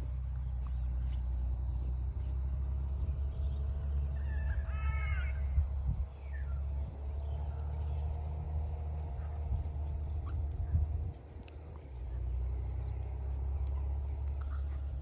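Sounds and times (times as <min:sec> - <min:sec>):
drawn-out animal call: 0:00.0 - 0:15.0
low wind-like rumble: 0:00.0 - 0:15.0.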